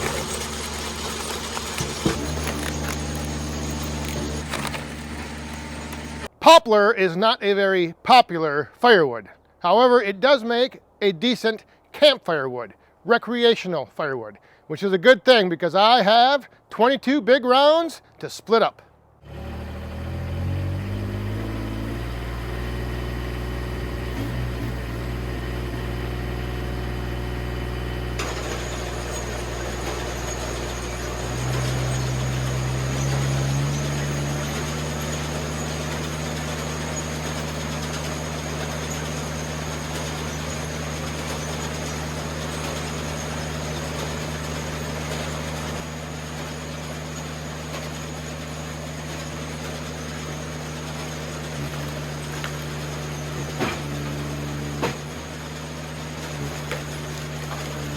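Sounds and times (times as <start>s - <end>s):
log splitter engine revving: 0.0s - 6.3s, 19.2s - 57.9s.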